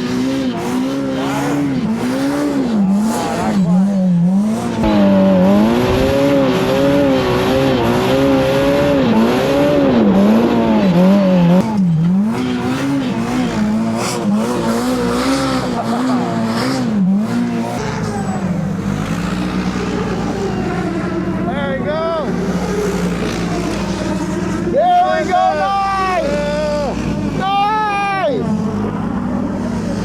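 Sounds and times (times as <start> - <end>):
engine revving hard: 0.0 - 27.6.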